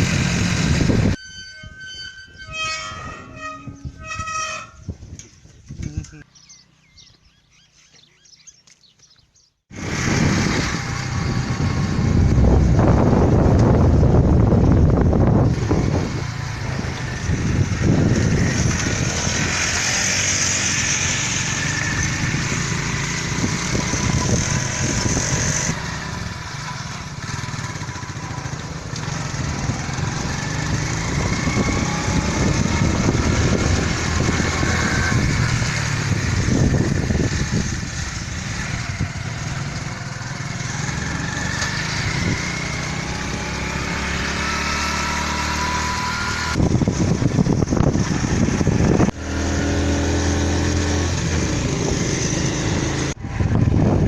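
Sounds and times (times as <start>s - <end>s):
vehicle engine running: 9.7s - 44.8s
wind or road noise hiss: 9.8s - 54.0s.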